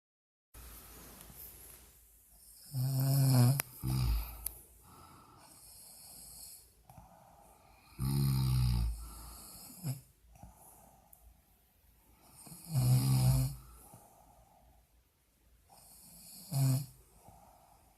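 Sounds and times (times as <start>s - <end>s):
woman snoring loudly: 2.6s - 4.5s, 7.8s - 10.1s, 12.4s - 13.7s, 15.8s - 17.0s
soft breathing: 3.5s - 8.0s, 8.9s - 12.7s, 13.5s - 16.3s, 16.9s - 17.9s
snort: 7.9s - 10.1s, 12.4s - 13.7s, 15.8s - 17.0s.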